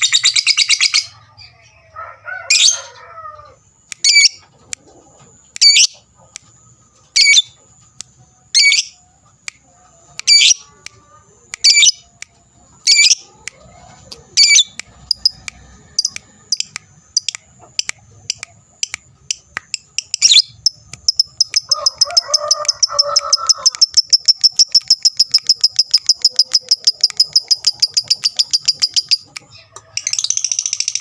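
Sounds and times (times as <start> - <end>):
lovebird chirping and trilling: 0.0 - 1.5, 4.0 - 4.4, 5.6 - 6.0, 7.2 - 7.6, 8.5 - 9.0, 10.3 - 10.7, 11.6 - 12.0, 12.8 - 13.3, 14.4 - 31.0.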